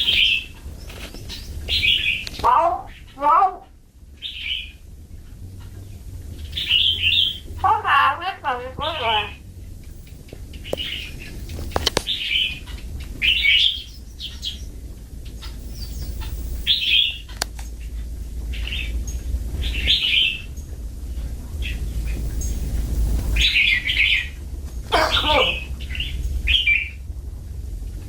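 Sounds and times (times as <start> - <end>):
sharp clicks: 0.0 - 2.5, 6.5 - 7.6, 9.8 - 12.2, 15.4 - 17.8
myna high chirping calls: 0.0 - 4.9, 5.6 - 20.6, 21.6 - 27.0.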